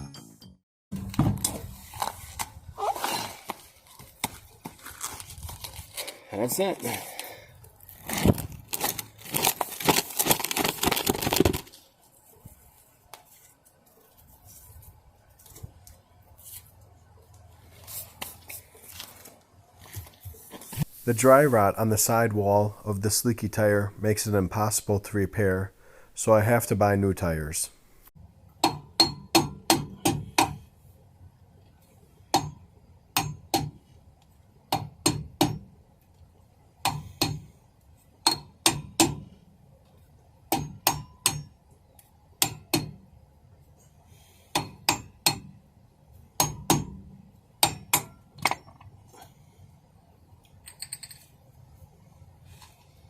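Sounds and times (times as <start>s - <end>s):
hammer striking metal: 28.6s - 30.6s, 44.5s - 45.5s.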